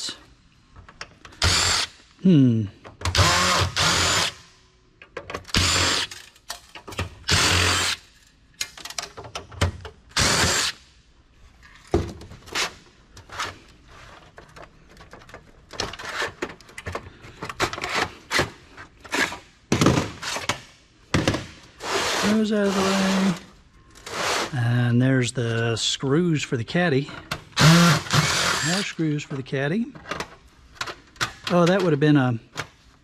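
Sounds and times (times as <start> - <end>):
cordless drill running: 1.4 - 1.9, 3.2 - 4.4, 5.6 - 6.1, 7.3 - 8.0, 10.2 - 10.7, 27.6 - 29.0.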